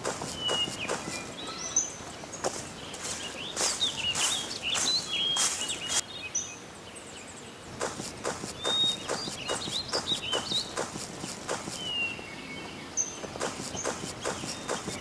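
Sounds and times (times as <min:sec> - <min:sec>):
footsteps walking: 0:00.0 - 0:06.0, 0:07.8 - 0:11.9, 0:13.2 - 0:15.0
birds chirping: 0:00.0 - 0:15.0.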